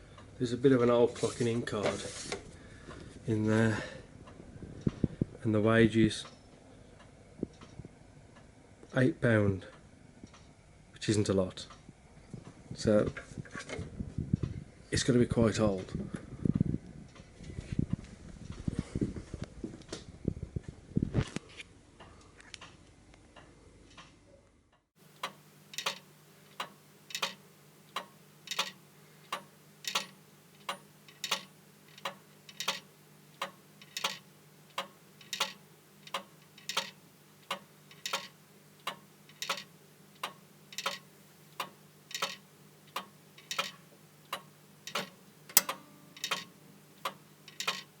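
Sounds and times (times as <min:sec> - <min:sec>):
clock ticking: 0:25.1 - 0:48.0.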